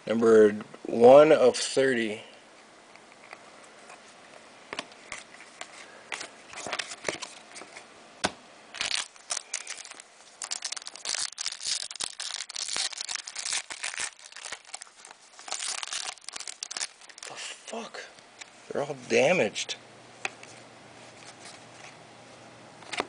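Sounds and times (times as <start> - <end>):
foil wrapper crinkling and tearing: 8.8 - 17.8.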